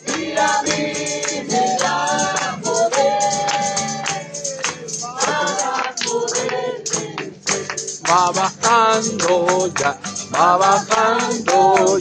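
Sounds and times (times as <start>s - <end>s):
group singing: 0.0s - 12.0s
tambourine beat: 0.0s - 12.0s.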